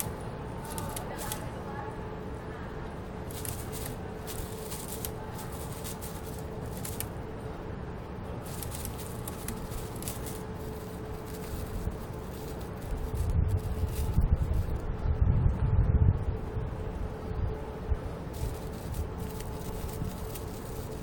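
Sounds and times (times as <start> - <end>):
squirrel gnawing on plastic: 0.0 - 1.5, 3.2 - 7.2, 8.4 - 14.6, 18.3 - 21.0
low outdoor rumble: 0.0 - 21.0.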